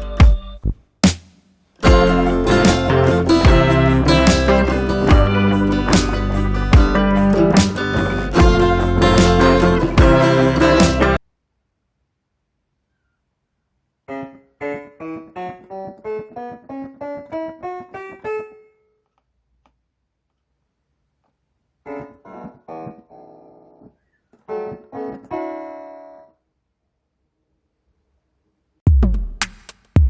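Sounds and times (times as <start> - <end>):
digital piano notes and chords: 1.8 - 11.2.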